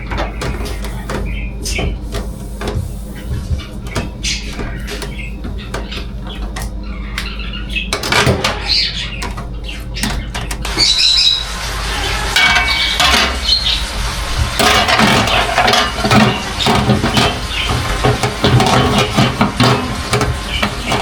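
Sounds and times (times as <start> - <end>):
kitchen clicks and knocks: 0.0 - 10.8, 12.0 - 13.7, 14.4 - 21.0
short high squeaks: 10.7 - 13.8.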